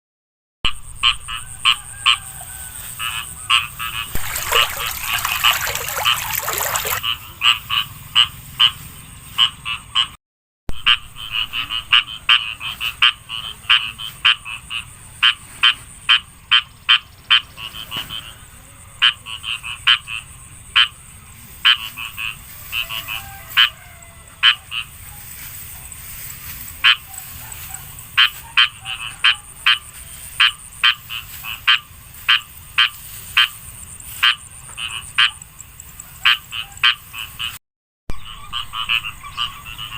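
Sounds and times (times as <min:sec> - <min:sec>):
frogs croaking: 0:00.7 - 0:02.4, 0:03.1 - 0:07.0, 0:10.8 - 0:15.4, 0:16.1 - 0:25.1, 0:28.2 - 0:39.9.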